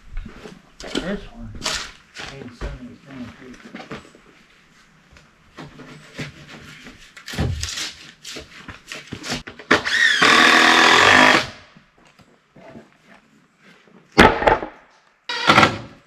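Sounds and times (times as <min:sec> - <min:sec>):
power drill whining: 0:09.8 - 0:11.6.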